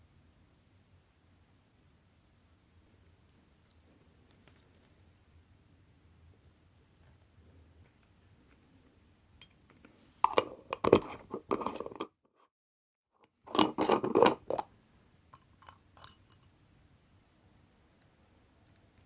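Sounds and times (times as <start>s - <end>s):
faint ticks: 0.0s - 5.0s
scraping and clicking on a wristwatch: 9.8s - 12.1s.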